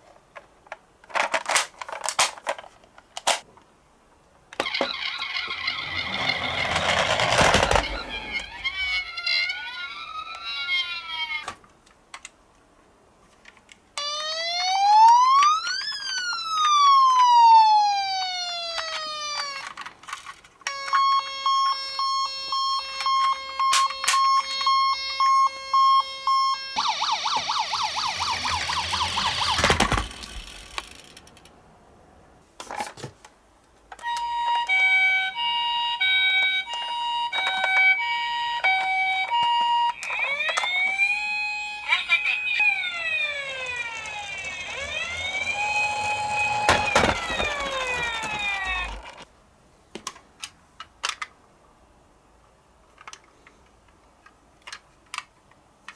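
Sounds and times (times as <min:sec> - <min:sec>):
toy electronic siren: 0:04.6 - 0:11.5, 0:14.0 - 0:19.8, 0:20.7 - 0:31.1, 0:34.0 - 0:49.2.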